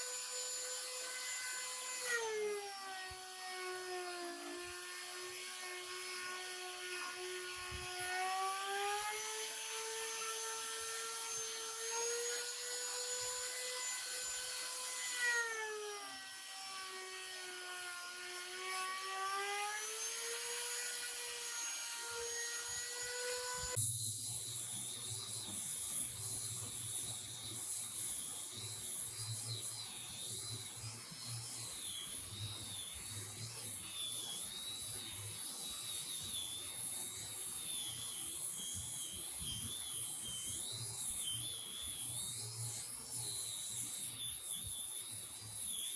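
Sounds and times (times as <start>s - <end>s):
power tool motor whining: 0.0s - 23.9s.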